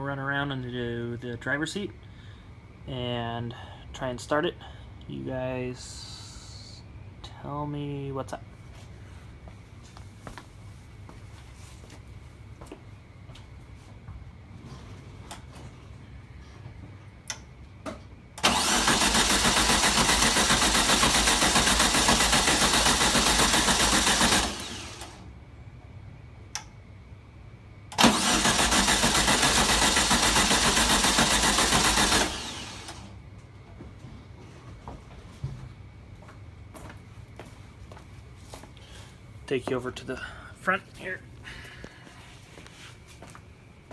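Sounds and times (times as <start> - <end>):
starter cranking car engine: 18.4 - 25.3, 27.9 - 33.1.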